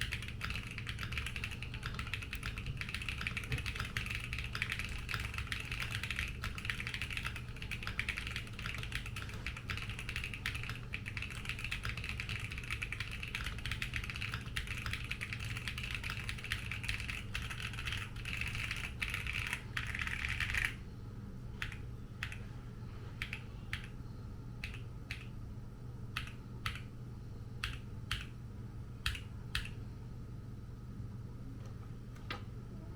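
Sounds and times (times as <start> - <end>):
fast typing on mechanical keyboard: 0.0 - 20.8, 21.6 - 22.4, 23.2 - 23.9, 24.6 - 25.3, 27.6 - 28.3.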